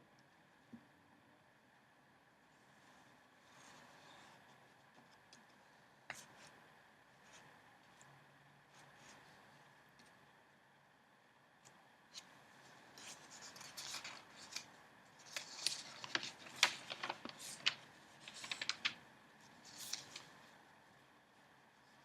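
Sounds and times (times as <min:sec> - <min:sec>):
paper rustling and crinkling: 0:12.2 - 0:20.5.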